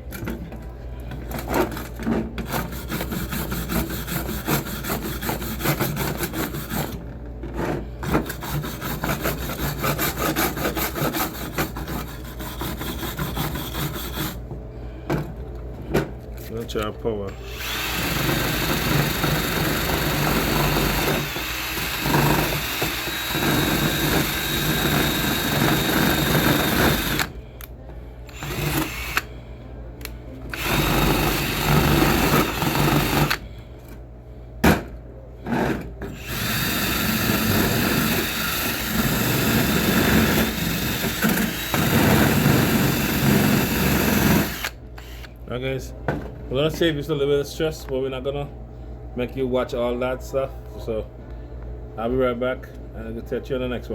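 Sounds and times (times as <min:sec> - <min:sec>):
drill wire brush scrubbing metal: 0:17.5 - 0:27.2.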